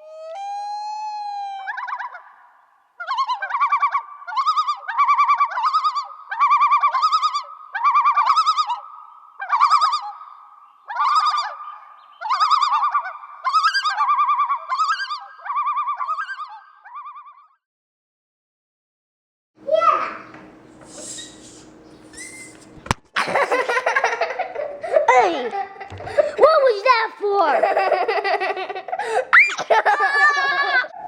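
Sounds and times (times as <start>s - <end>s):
warbling whistled trills: 0.0s - 17.5s, 20.9s - 22.6s.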